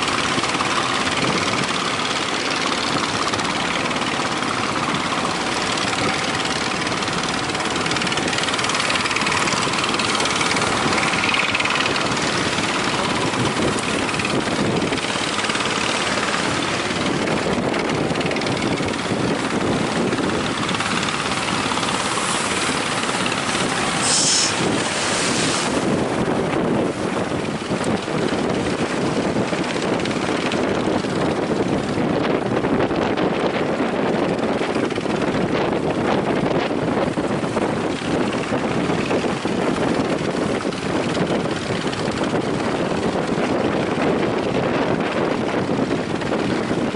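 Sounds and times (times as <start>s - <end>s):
boat outboard engines running: 0.0s - 46.9s
surf: 0.0s - 46.9s
wind blowing on microphone: 0.0s - 46.9s.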